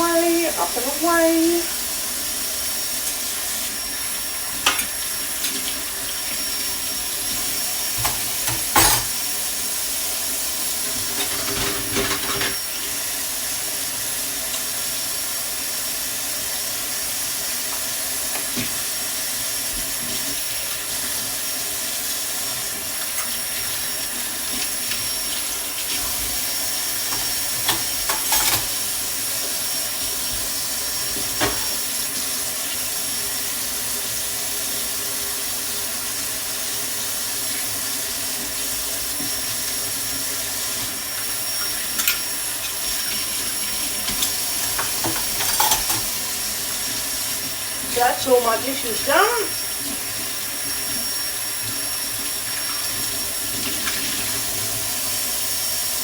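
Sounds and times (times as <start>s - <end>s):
running water hiss: 0.0s - 56.0s
dishes clinking and clattering: 4.6s - 5.7s, 7.9s - 9.3s, 11.0s - 12.6s, 27.1s - 29.0s, 31.3s - 31.8s, 41.7s - 46.3s.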